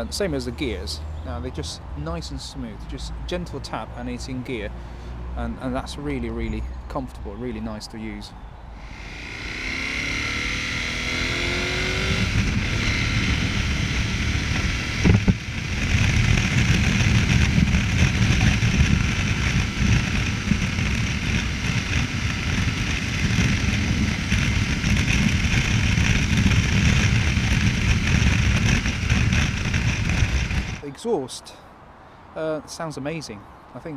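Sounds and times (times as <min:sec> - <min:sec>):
motorcycle engine running: 0:08.7 - 0:30.8.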